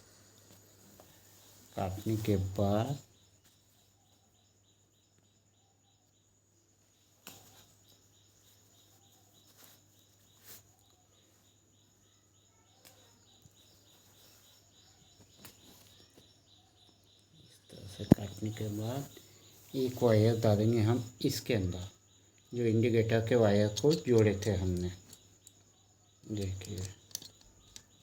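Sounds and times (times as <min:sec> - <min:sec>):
faint rapid chirping: 0:00.0 - 0:28.0
faint clicks: 0:23.7 - 0:28.0.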